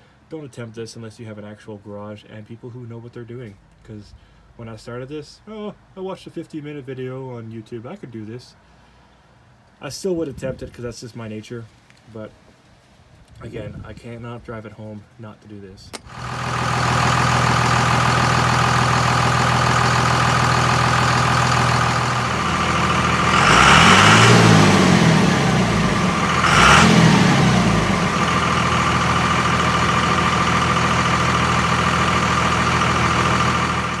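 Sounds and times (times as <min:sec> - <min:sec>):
pickup truck engine idling and revving: 0:16.0 - 0:34.0.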